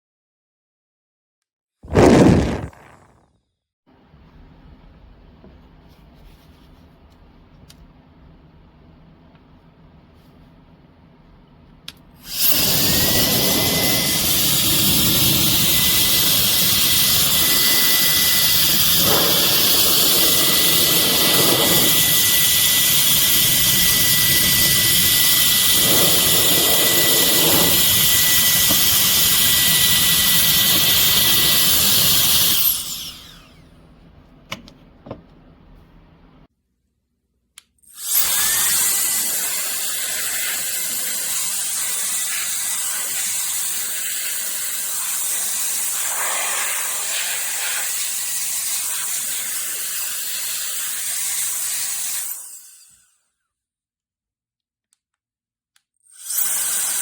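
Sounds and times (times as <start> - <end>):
electric air duster fan whine: 12.2 - 36.5, 45.8 - 48.2.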